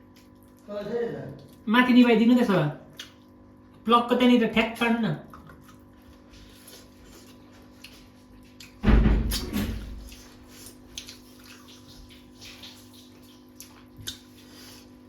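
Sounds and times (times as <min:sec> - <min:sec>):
heavy thump: 0:08.8 - 0:09.4.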